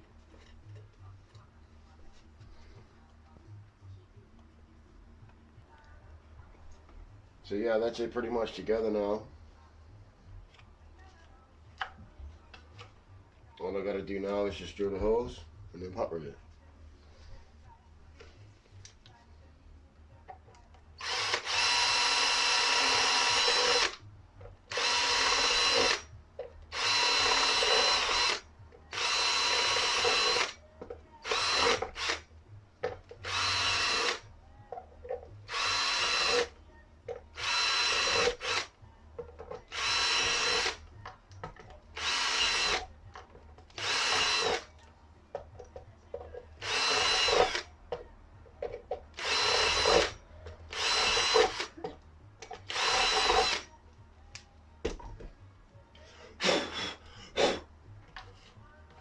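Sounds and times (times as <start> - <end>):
power drill drilling: 21.0 - 24.0, 24.7 - 26.0, 26.7 - 30.5, 31.2 - 32.2, 33.2 - 34.2, 35.5 - 36.5, 37.4 - 38.7, 39.7 - 40.8, 42.0 - 42.8, 43.8 - 44.6, 46.6 - 47.6, 49.2 - 50.1, 50.7 - 51.7, 52.7 - 53.6.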